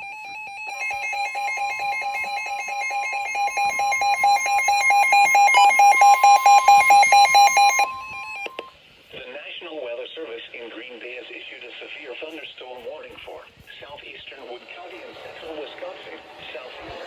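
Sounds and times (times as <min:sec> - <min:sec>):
rapid electronic beeping: 0:00.0 - 0:08.6, 0:14.6 - 0:17.0
steady alarm tone: 0:00.0 - 0:08.7.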